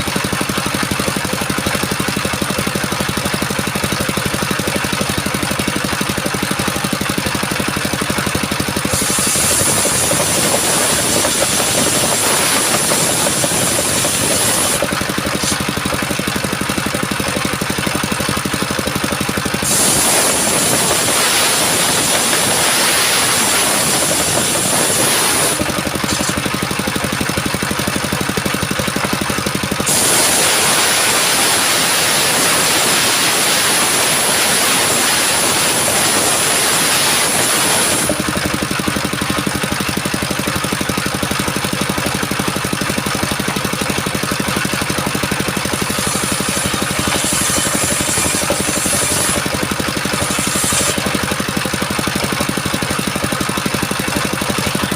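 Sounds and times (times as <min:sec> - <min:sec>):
engine running: 0:00.0 - 0:54.9
saw blade spinning freely: 0:00.4 - 0:41.5, 0:42.1 - 0:54.9
circular saw blade ripping wood: 0:08.7 - 0:16.2, 0:19.3 - 0:26.7, 0:29.8 - 0:38.6, 0:45.6 - 0:51.4.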